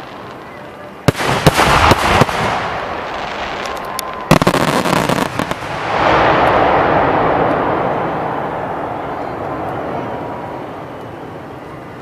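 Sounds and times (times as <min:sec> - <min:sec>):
noisy wash of fireworks: 0:00.0 - 0:00.4, 0:01.0 - 0:10.6
fireworks bangs: 0:01.0 - 0:10.1.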